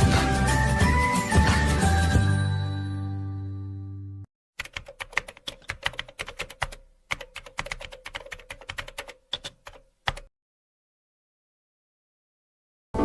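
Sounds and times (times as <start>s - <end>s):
rapid sharp clicks: 4.6s - 10.3s.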